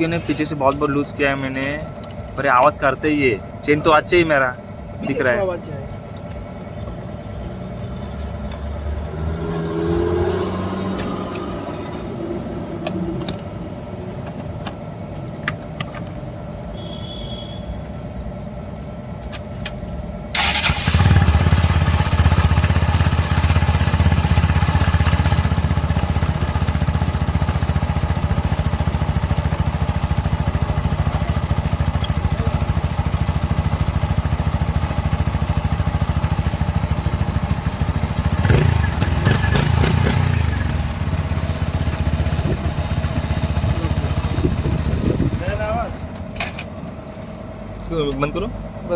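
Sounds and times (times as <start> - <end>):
motorcycle engine running: 20.4 - 47.2.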